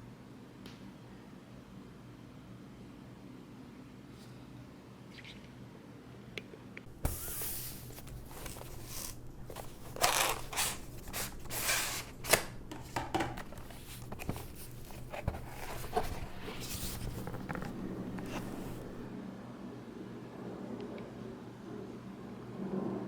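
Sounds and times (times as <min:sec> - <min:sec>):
packaging rustling and scraping: 0:06.9 - 0:19.1.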